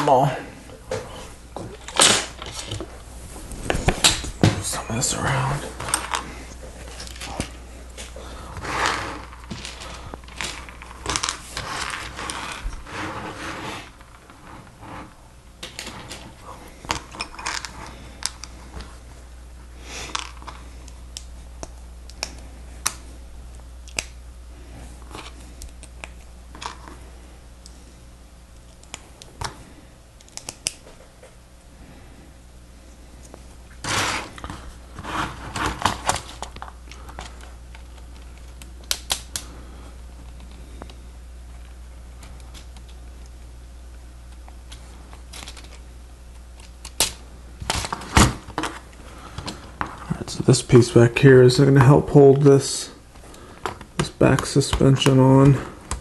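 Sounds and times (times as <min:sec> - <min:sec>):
plastic pieces clicking and rattling: 0:44.7 - 0:45.8.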